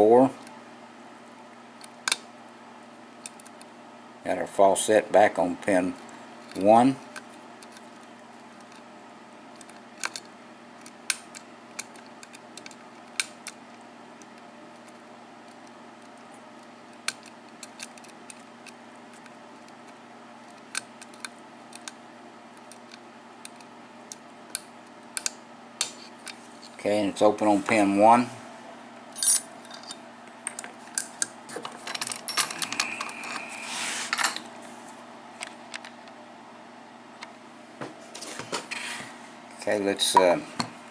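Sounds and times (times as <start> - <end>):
steady low hum: 0.0 - 40.9
metal scraping rub: 33.1 - 34.4.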